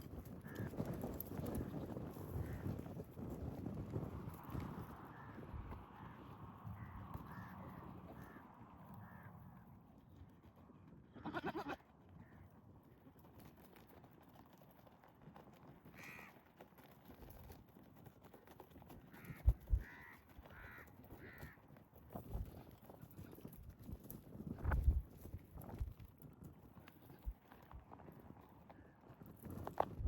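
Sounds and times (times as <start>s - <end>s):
goat bleating: 11.1s - 11.9s.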